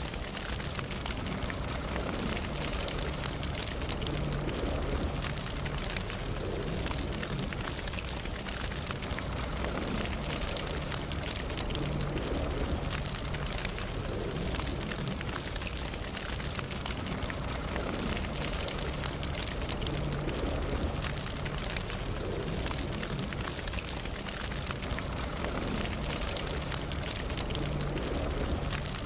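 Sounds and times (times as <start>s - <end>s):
campfire crackling and popping: 0.0s - 29.0s.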